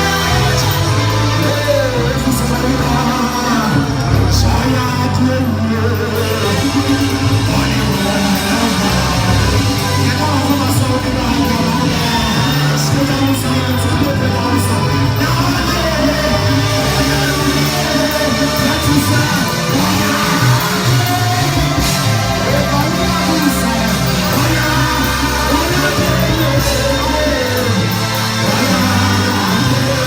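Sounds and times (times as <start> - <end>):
church band playing: 0.0 - 30.0
lead voice singing: 0.0 - 30.0.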